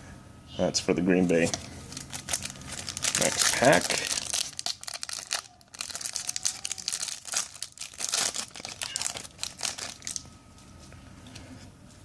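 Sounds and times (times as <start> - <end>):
card pack wrapper tearing and crinkling: 1.9 - 10.2.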